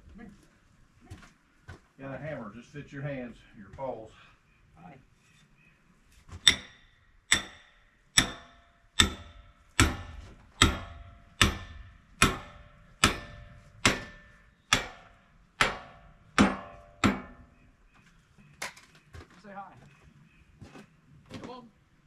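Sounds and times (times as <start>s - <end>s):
hammer striking with short ring: 6.4s - 15.0s.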